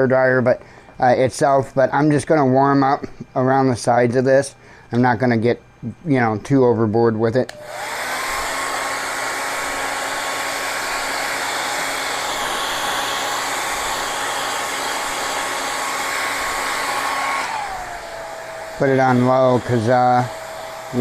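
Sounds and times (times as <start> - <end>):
hair dryer running: 7.5 - 21.0.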